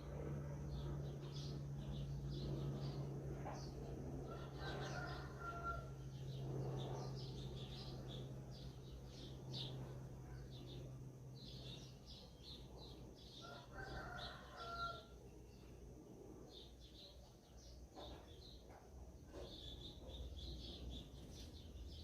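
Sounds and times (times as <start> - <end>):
small birds chirping: 0.0 - 22.0
steady low hum: 0.0 - 22.0
rooster crowing: 4.2 - 6.0, 13.4 - 15.2.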